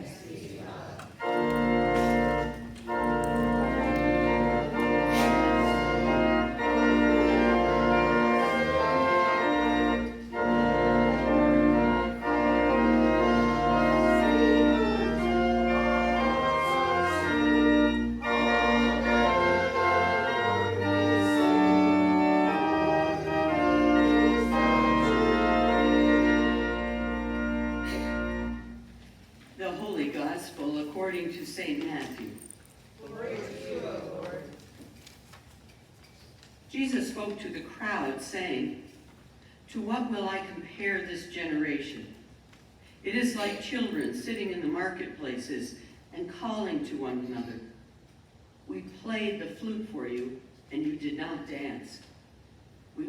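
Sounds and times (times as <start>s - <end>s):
church organ playing chords: 1.2s - 29.1s.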